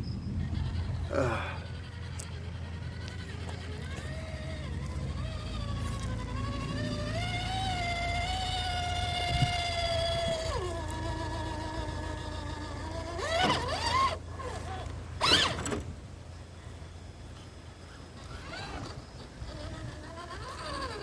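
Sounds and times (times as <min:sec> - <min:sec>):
electric motor whining: 0:00.0 - 0:21.0.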